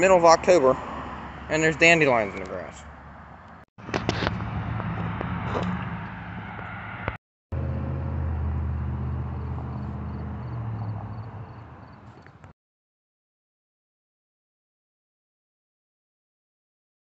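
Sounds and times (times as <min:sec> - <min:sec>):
low engine hum: 0:02.4 - 0:12.5.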